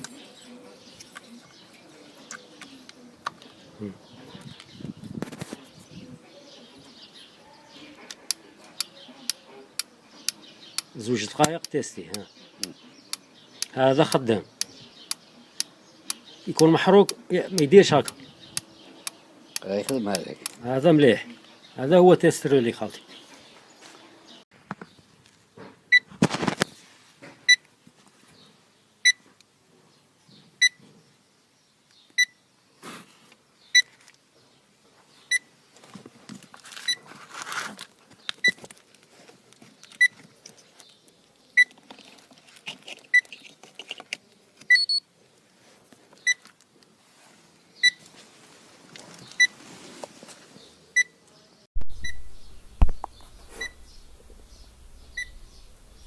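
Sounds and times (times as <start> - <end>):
handling rustles and knocks: 51.8 - 56.0
short high beeps: 51.8 - 56.0.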